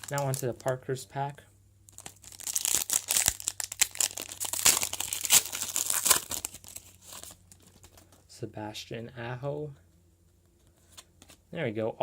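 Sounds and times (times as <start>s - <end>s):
foil wrapper tearing and crinkling: 0.0s - 0.8s, 1.9s - 7.4s.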